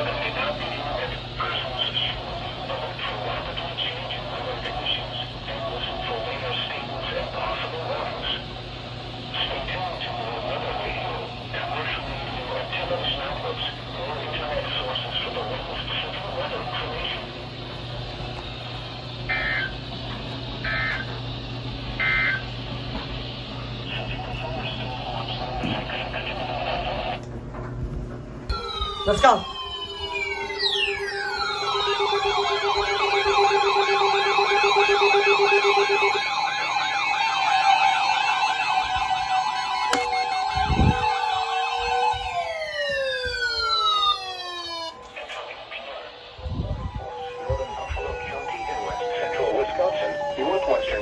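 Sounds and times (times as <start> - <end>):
steady siren tones: 0.0 - 27.2, 28.5 - 51.0
warbling siren: 0.0 - 27.2, 28.5 - 51.0
steady low hum: 0.0 - 44.2
shrill digital data tones: 19.3 - 19.9, 21.9 - 22.6, 28.5 - 45.0
low pulsing tone: 28.5 - 36.4.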